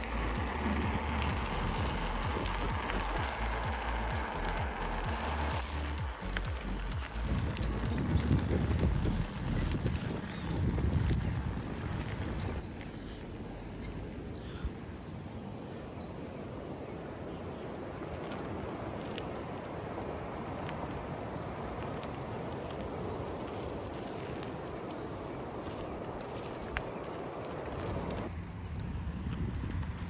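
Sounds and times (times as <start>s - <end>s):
mountain bike rumbling over rough track: 0.0s - 12.6s.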